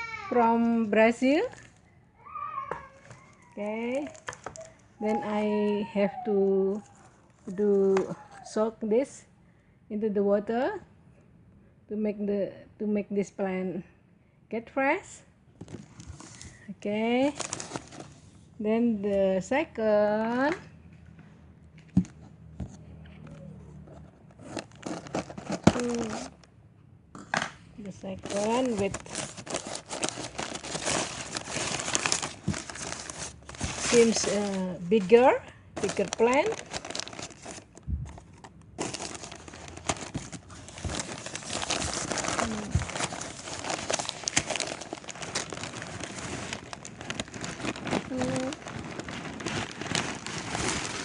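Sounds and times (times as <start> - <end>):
packaging crinkling and tearing: 0.3 - 1.9, 3.0 - 5.9, 17.2 - 18.2, 24.4 - 26.5, 28.1 - 51.0.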